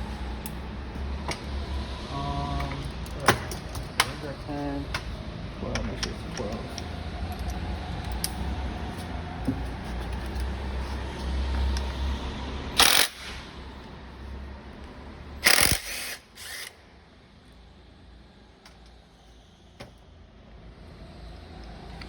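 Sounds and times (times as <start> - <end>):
power drill running on a bolt: 12.8 - 13.4, 15.4 - 16.8.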